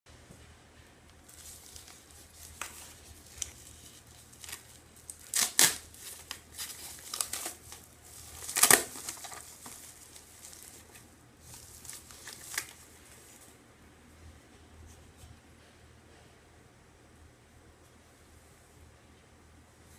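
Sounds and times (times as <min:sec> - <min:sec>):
packaging crinkling and rustling: 0:01.2 - 0:13.6.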